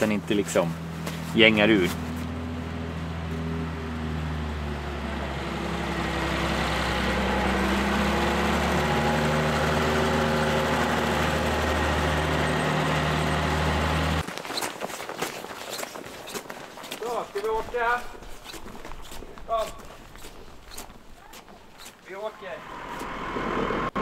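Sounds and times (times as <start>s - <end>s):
tractor diesel engine running: 0.0s - 14.3s, 17.0s - 24.0s.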